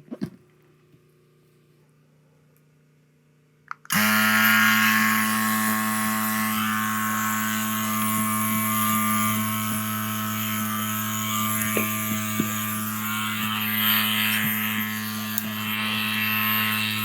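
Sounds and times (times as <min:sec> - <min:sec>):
electric tire inflator humming: 0:03.9 - 0:17.0.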